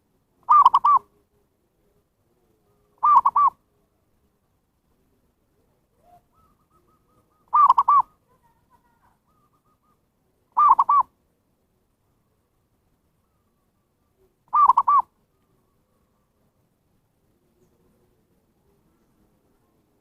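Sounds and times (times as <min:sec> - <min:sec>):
dove cooing: 0:00.4 - 0:03.6, 0:05.5 - 0:11.1, 0:13.2 - 0:16.3.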